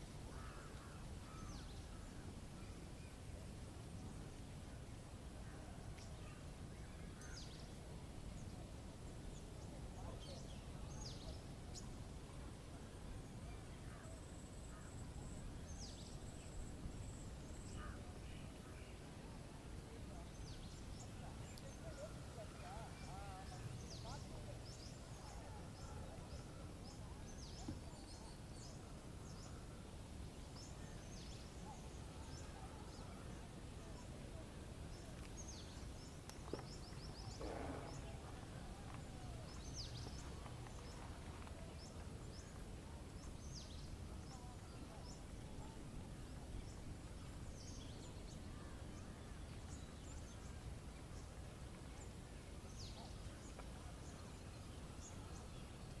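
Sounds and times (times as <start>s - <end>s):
small birds chirping: 34.9s - 56.0s.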